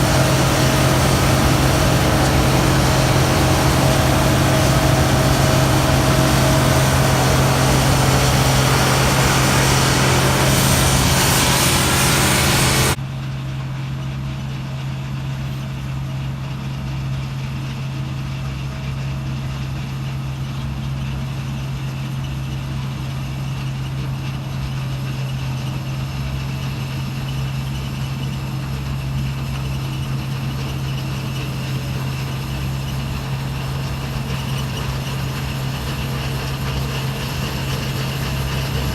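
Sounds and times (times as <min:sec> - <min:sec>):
harvest machinery engine running: 0:00.0 - 0:13.0, 0:13.6 - 0:38.9
loud rushing noise: 0:00.0 - 0:13.0.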